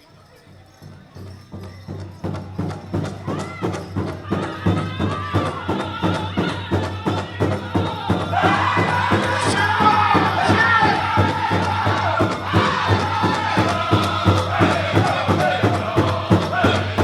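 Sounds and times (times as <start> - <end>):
large drum beating: 1.9 - 17.0
chorus of singers: 3.6 - 17.0
high solo voice singing: 4.4 - 17.0.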